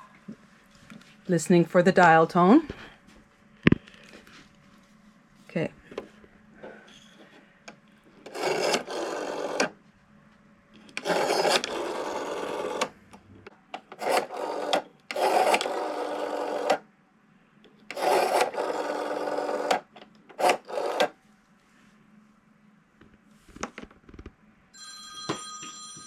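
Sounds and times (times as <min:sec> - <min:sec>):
rotary phone dial whirring: 0:07.0 - 0:09.8, 0:10.8 - 0:16.8, 0:17.9 - 0:21.2.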